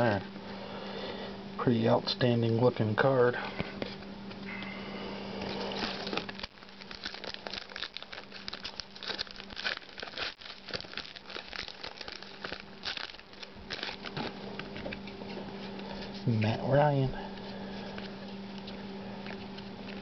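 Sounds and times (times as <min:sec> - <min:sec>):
wrapper crinkling and tearing: 0:05.4 - 0:16.2.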